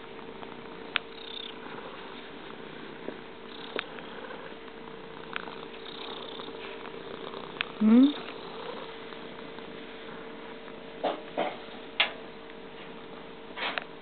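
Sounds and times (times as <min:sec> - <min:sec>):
cat purring: 0:00.0 - 0:12.0.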